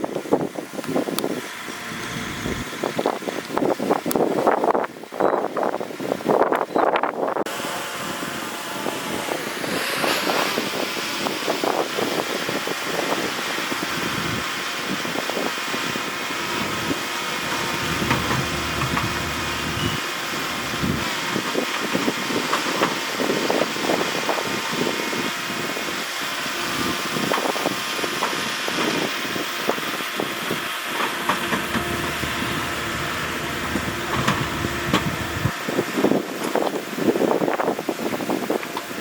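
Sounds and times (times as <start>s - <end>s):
diesel machinery running: 0.0s - 5.1s, 7.5s - 39.0s
metal clanks and crunches: 17.4s - 21.9s, 31.0s - 35.5s.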